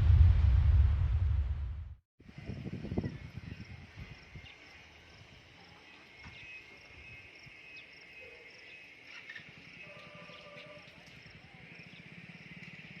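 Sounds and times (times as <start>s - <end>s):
low thuds: 0.0s - 2.0s
insects trilling: 3.2s - 13.0s.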